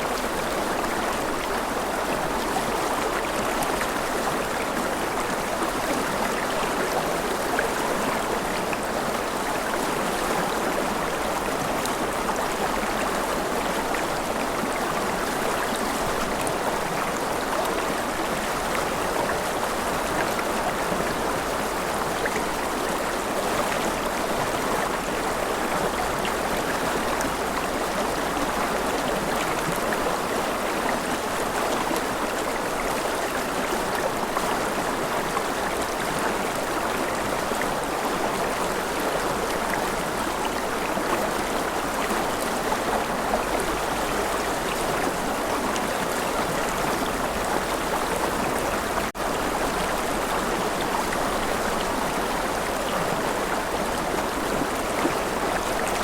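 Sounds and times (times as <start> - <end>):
river water flowing over stones: 0.0 - 56.0.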